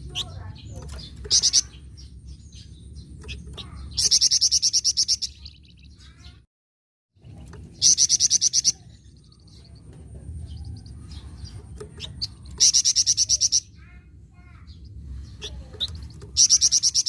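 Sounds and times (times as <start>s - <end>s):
soft bird chirps: 0.0s - 6.5s.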